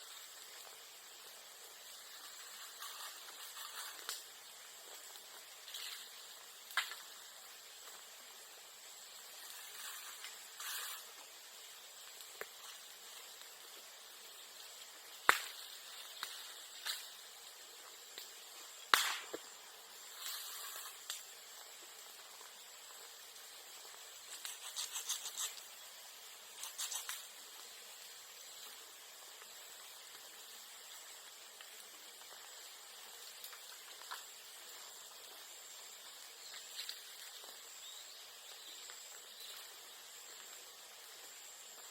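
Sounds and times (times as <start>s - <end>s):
bonfire crackling and hissing: 0.0s - 41.9s
loud sharp cracks: 15.2s - 15.6s, 18.9s - 19.4s.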